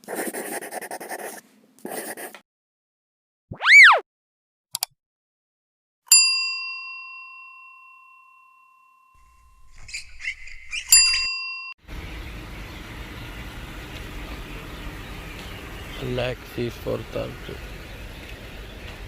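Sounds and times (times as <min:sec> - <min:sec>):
tone sweeping up and down: 0:03.5 - 0:04.0
bell-like ding: 0:06.1 - 0:09.4, 0:11.0 - 0:11.8.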